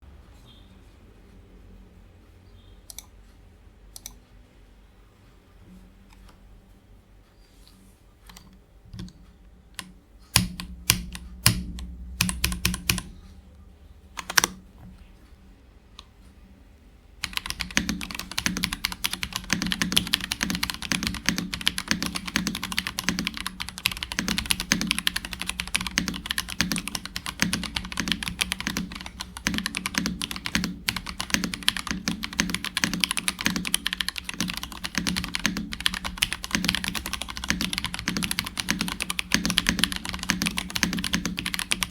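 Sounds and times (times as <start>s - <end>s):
mechanical keyboard typing: 9.8s - 13.1s, 14.2s - 14.6s, 17.2s - 41.9s.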